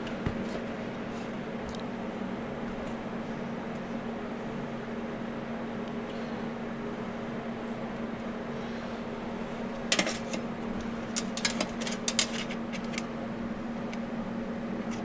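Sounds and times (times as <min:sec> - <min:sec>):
fan hum: 0:00.0 - 0:15.0
metal parts clicking and knocking: 0:09.9 - 0:13.1.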